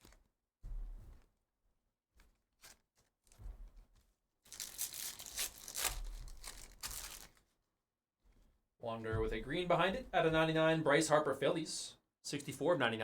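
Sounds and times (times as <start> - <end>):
wrapper tearing and crinkling: 4.5 - 7.4.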